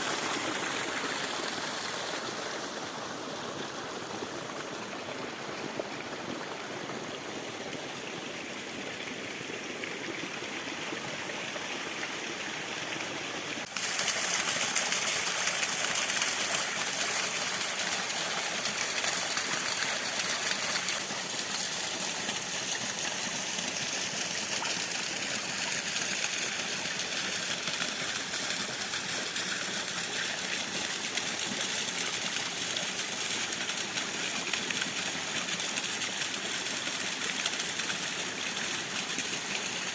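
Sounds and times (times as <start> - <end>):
water rushing over waterfall: 11.5 - 30.4.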